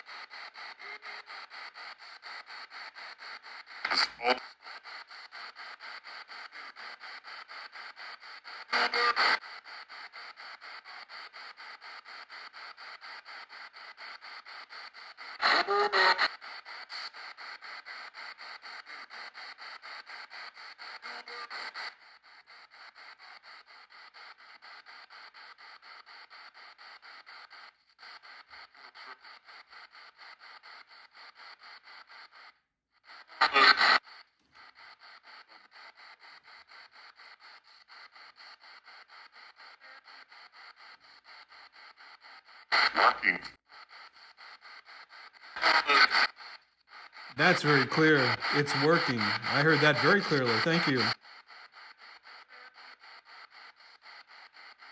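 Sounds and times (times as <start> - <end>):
chopped radio static hiss: 0.0 - 54.9
loud radio bursts: 47.4 - 51.2.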